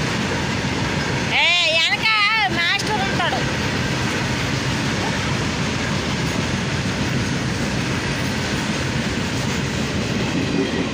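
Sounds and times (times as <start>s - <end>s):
train wheels rumbling on rails: 0.0s - 10.9s.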